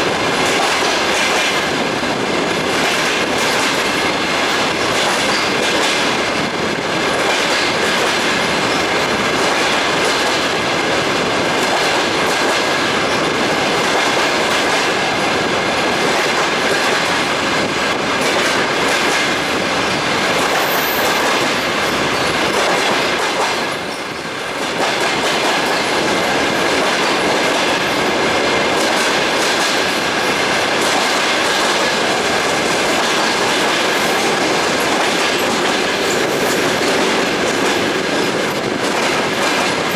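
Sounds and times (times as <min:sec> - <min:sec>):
clickety-clack of rail joints: 0:00.0 - 0:39.9
train wheels rumbling on rails: 0:00.0 - 0:39.9.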